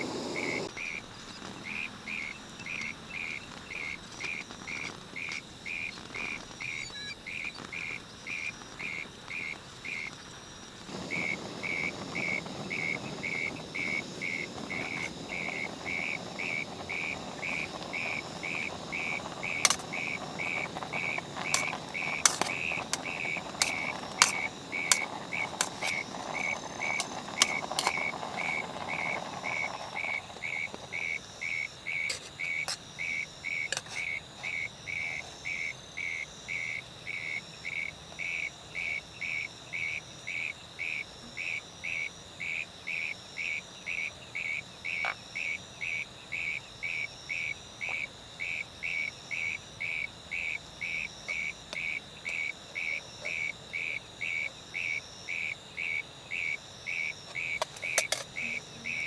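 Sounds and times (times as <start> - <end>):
insect calling in pulses: 50.0 - 59.0.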